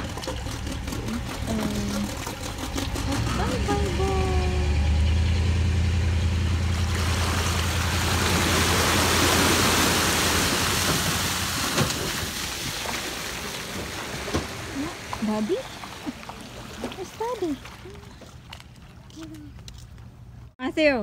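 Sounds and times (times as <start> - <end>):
engine running with low hum: 0.0 - 12.3.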